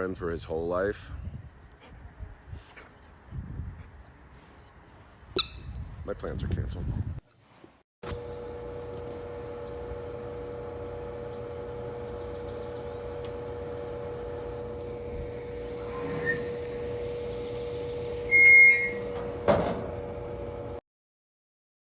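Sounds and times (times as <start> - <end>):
machine hum: 8.1 - 20.8.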